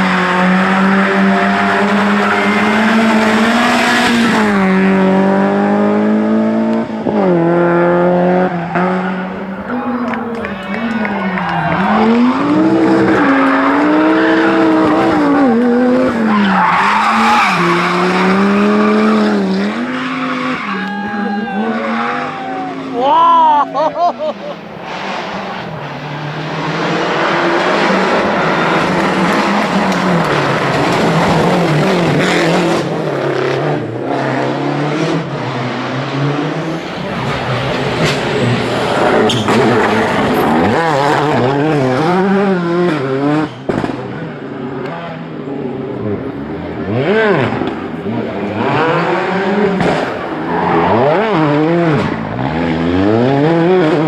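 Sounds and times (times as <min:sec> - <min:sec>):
rally car engine at high revs: 0:00.0 - 0:23.0, 0:24.1 - 0:54.0
tyres skidding: 0:00.0 - 0:54.0.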